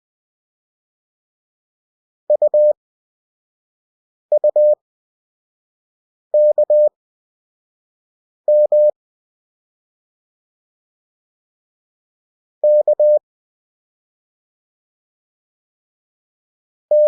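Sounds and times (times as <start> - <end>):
morse code beeps: 2.3 - 2.8, 4.3 - 4.8, 6.4 - 6.9, 8.5 - 8.9, 12.6 - 13.2.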